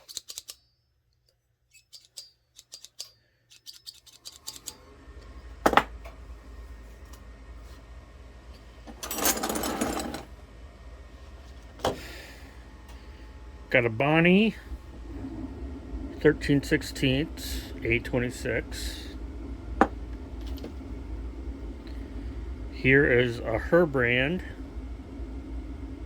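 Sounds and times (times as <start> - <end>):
hand tools clicking and tapping: 0.0 - 0.6, 1.7 - 4.7
low mechanical hum: 0.0 - 26.0
metal tools rattling: 1.7 - 4.7, 8.9 - 10.3.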